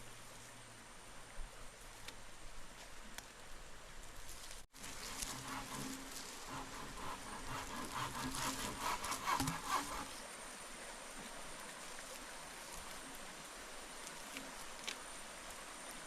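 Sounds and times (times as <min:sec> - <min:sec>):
rhythmic scraping strokes: 0:04.8 - 0:10.2.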